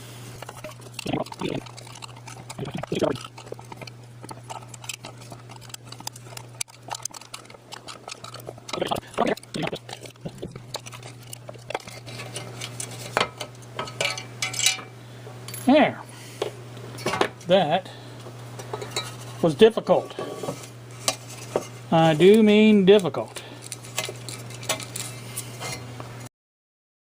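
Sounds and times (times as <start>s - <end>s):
steady low hum: 0.0s - 26.3s
tool clicking and scraping: 0.4s - 14.8s, 20.1s - 25.9s.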